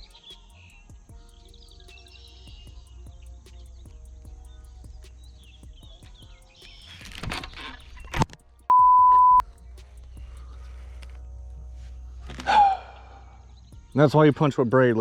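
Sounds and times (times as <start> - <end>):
censor bleep: 8.7 - 9.4.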